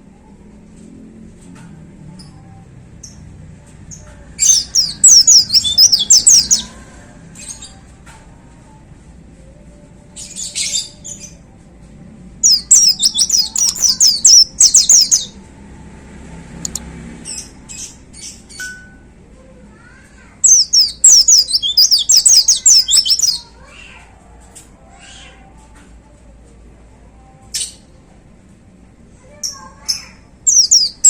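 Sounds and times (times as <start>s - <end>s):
bird singing fast high notes: 4.4s - 6.7s, 12.4s - 15.3s, 20.4s - 23.4s, 30.5s - 31.0s
bird chirps: 4.4s - 6.8s, 12.4s - 15.4s, 16.6s - 18.8s, 20.4s - 23.5s, 29.9s - 31.0s.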